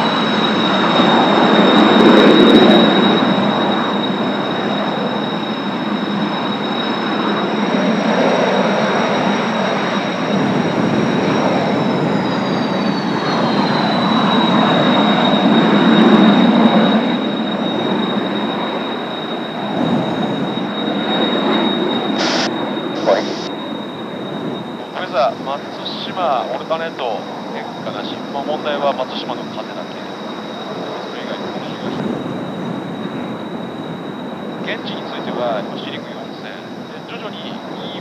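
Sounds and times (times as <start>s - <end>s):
high jet whine: 0.0s - 38.0s
jet engines roaring: 0.0s - 38.0s
broad rushing noise: 22.1s - 23.5s.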